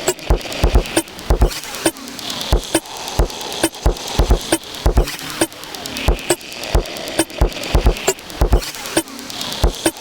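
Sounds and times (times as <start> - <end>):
electronic drum loop: 0.0 - 10.0.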